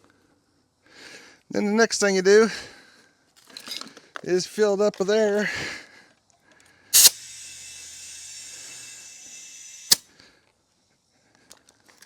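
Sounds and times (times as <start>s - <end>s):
air hose hissing: 6.9s - 10.1s
air chuck click: 7.0s - 10.0s.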